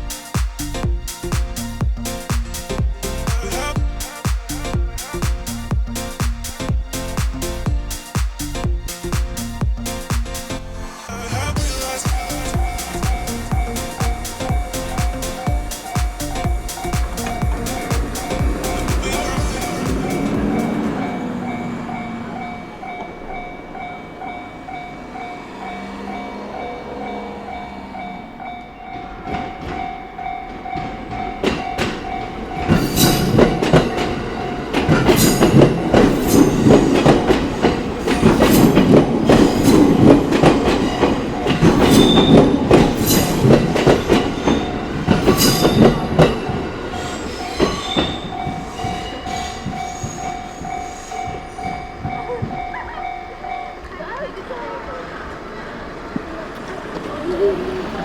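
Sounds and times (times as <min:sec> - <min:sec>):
train wheels clacking over rail joints: 0:11.6 - 0:28.0, 0:28.8 - 0:52.9
level-crossing warning bell: 0:11.6 - 0:55.6.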